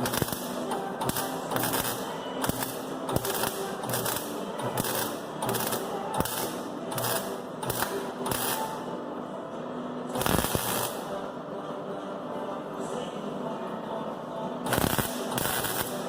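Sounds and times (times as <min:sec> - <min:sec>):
spot-weld bursts crackling: 0:00.0 - 0:08.8, 0:10.2 - 0:11.1, 0:14.7 - 0:16.0.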